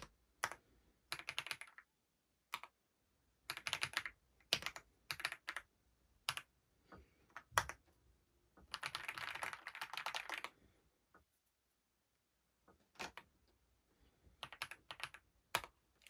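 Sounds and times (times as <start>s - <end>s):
mechanical keyboard typing: 0.0s - 1.9s, 2.5s - 2.8s, 3.4s - 6.5s, 7.3s - 7.8s, 8.6s - 10.5s, 12.9s - 13.3s, 14.4s - 16.0s.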